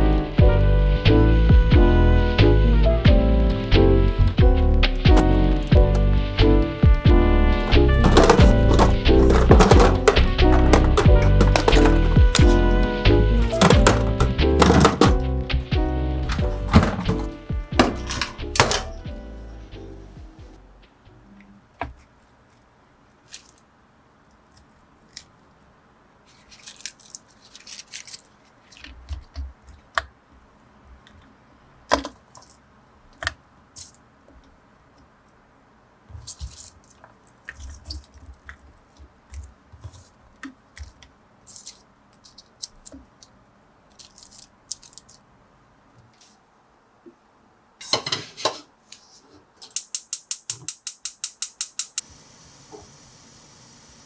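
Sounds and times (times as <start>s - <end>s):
soft low thumps: 1.3s - 2.0s, 3.0s - 18.1s
rustling: 4.6s - 25.6s, 26.2s - 46.5s
utensils clicking and knocking: 7.5s - 15.2s, 16.2s - 19.1s, 49.6s - 52.0s.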